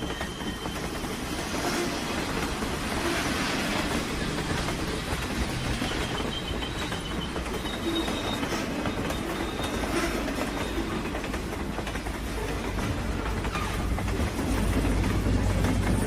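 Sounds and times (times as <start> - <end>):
high wheel squeal: 0.0 - 2.2, 2.9 - 11.2
train rumbling on rails: 0.0 - 16.0
wheels clacking over rail joints: 0.0 - 16.0.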